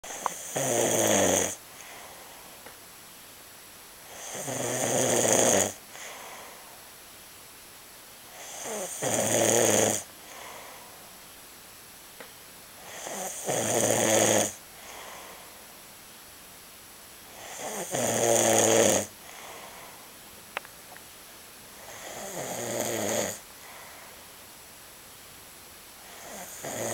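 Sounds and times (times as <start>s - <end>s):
loud buzzing snores: 0.0s - 1.6s, 4.0s - 6.6s, 8.3s - 10.7s, 12.8s - 15.3s, 17.3s - 19.9s, 21.8s - 24.1s, 26.0s - 26.9s
soft breathing: 1.6s - 2.8s, 5.9s - 7.0s, 10.2s - 11.2s, 14.7s - 15.9s, 19.2s - 20.2s, 23.4s - 24.5s.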